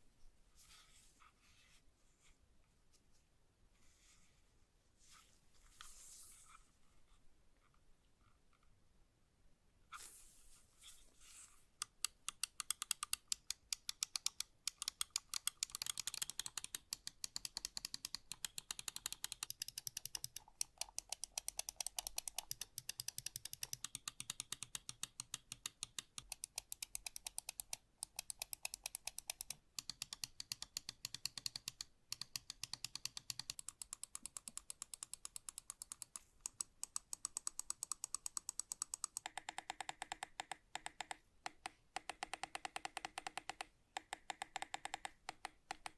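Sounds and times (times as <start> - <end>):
computer mouse clicking rapidly: 11.8 - 45.9.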